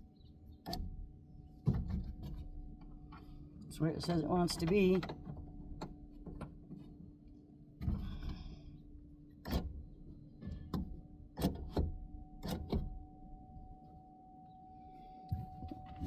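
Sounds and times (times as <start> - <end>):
faint steady hum: 0.0 - 16.0
car door parts clicking: 10.7 - 12.9.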